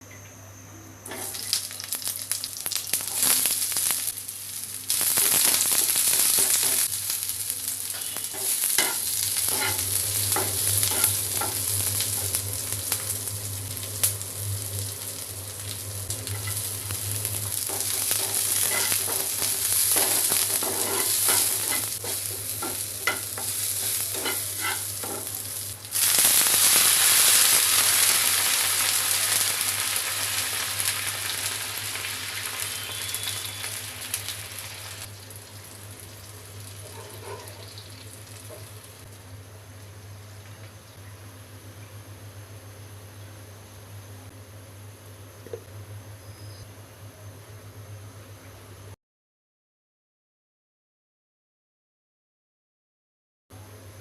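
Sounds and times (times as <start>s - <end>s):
food sizzling in hot oil: 1.1s - 39.2s
spatula scraping pan: 8.3s - 11.6s, 17.7s - 25.4s.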